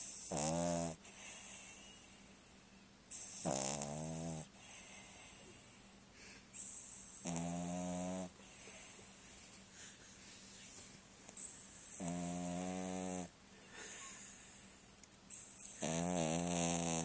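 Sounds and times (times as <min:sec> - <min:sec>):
dog snoring: 0:00.0 - 0:01.9, 0:03.1 - 0:05.4, 0:06.6 - 0:09.0, 0:11.4 - 0:13.4, 0:15.3 - 0:17.0.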